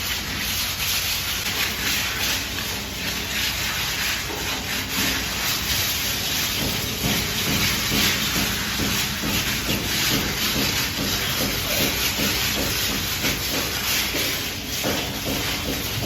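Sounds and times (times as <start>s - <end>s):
trowel scraping wet plaster: 0.0s - 16.0s.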